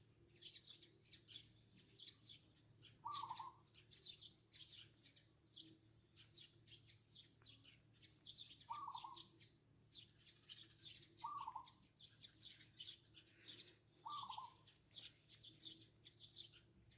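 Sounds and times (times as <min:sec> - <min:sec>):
sparrows chirping: 0:00.0 - 0:16.9
dove trilled coos: 0:03.0 - 0:04.8, 0:08.6 - 0:09.4, 0:10.4 - 0:15.8.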